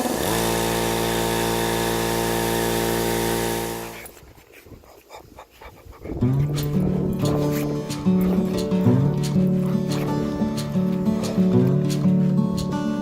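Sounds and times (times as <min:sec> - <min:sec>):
air compressor running: 0:00.0 - 0:04.0.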